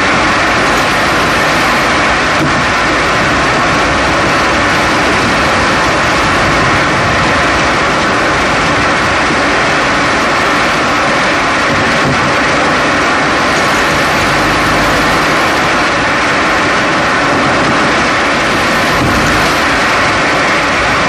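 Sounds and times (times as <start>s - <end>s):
tyre and road noise: 0.0s - 21.0s.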